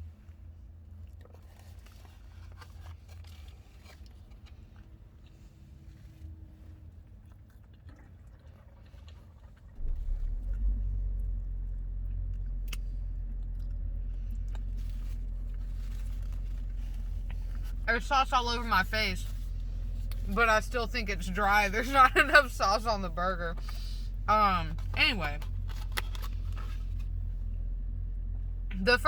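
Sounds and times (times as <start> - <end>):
person chewing food: 1.0 - 5.4, 10.3 - 17.8
steady low rumble: 9.8 - 29.0.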